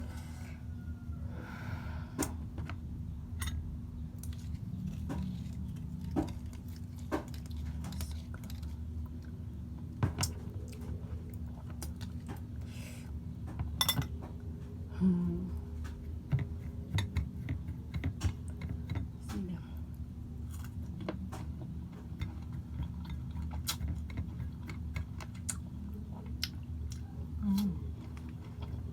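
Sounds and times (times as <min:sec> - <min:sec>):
steady low hum: 0:00.0 - 0:28.9
cutlery clinking on dishes: 0:13.8 - 0:14.1
chewing: 0:20.5 - 0:28.9.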